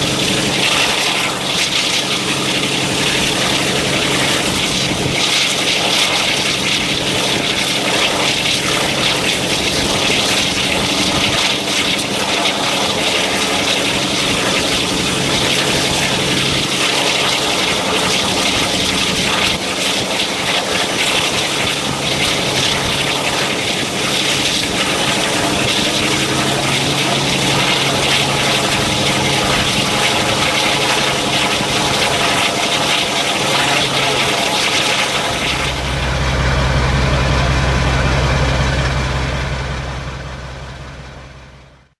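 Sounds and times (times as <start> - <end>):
locomotive diesel engines throbbing: 21.8 - 41.9.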